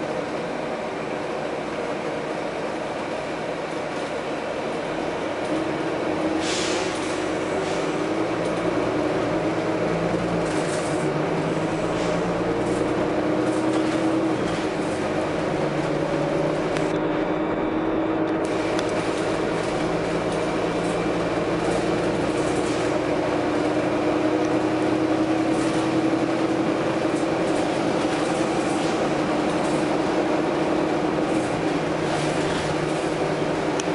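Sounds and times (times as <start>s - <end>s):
bus diesel engine droning: 0.0s - 33.9s
compressed-air hisses: 6.4s - 6.9s.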